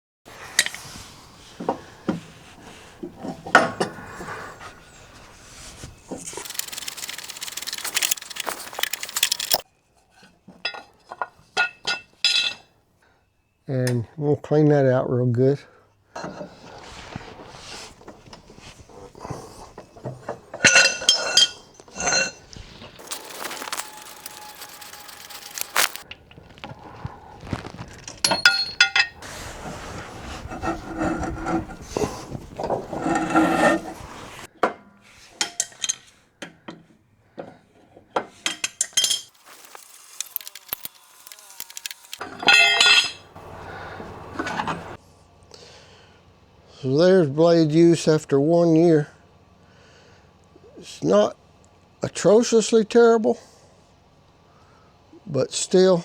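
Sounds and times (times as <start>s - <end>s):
hiss: 0.3s - 7.9s, 16.4s - 19.8s
metal tools clanging: 0.4s - 9.6s, 18.1s - 26.1s, 27.6s - 29.3s, 30.0s - 34.5s, 38.5s - 45.0s.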